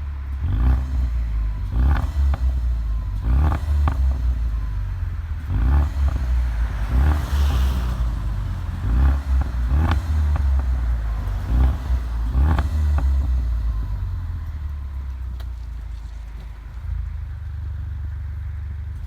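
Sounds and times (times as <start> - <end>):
car engine revving: 0.0 - 14.5
exhaust pops and crackles: 8.8 - 13.6.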